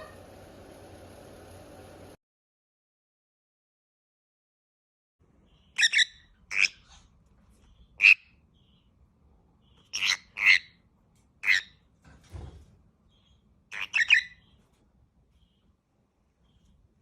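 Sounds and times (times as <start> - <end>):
parrot calling sharply: 13.7 - 14.4.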